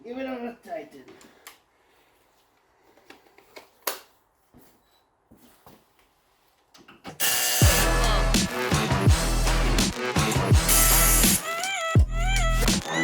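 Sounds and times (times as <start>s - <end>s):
background music with steady beat: 7.1s - 13.0s.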